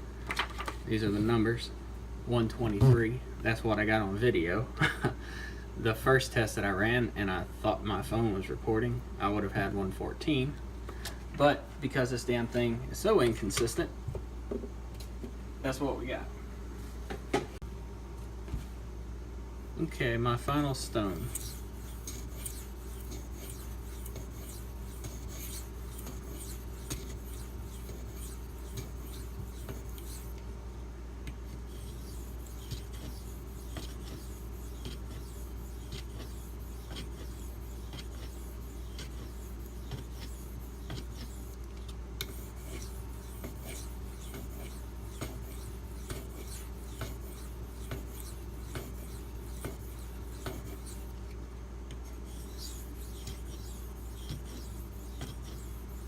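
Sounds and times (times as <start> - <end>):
knife scraping on sharpening stone: 21.2 - 30.3, 31.7 - 41.5, 52.3 - 56.0.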